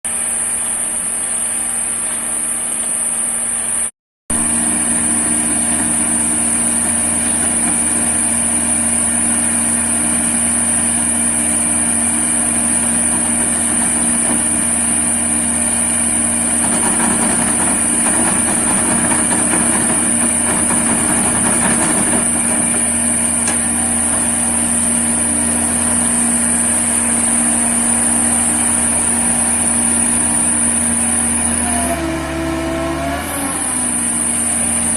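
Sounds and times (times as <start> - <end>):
concrete mixer engine running: 0.1 - 34.9
constant high whine: 0.1 - 34.9.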